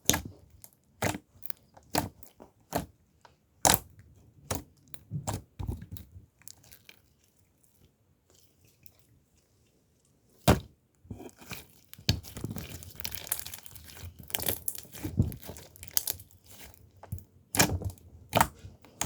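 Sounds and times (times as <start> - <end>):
packaging crinkling and tearing: 12.2 - 16.8.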